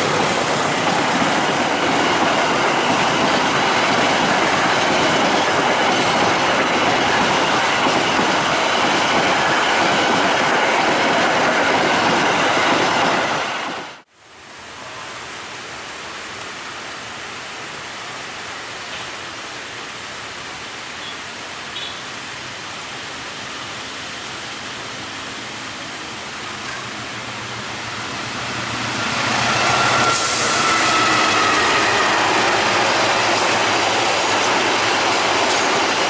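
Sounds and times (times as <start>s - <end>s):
train wheels rushing on rail: 0.0s - 14.0s, 23.4s - 36.0s
steady rushing hiss: 22.2s - 36.0s.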